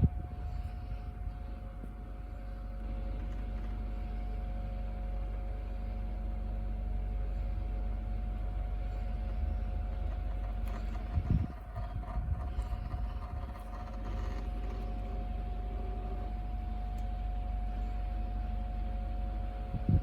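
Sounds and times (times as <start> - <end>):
air rumble: 0.0 - 20.0
small fan motor humming: 0.0 - 20.0.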